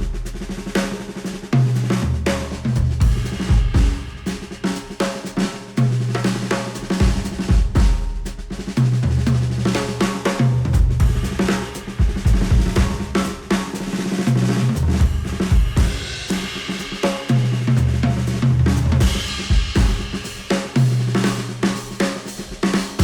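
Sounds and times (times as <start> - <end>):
drum kit: 0.0 - 23.0.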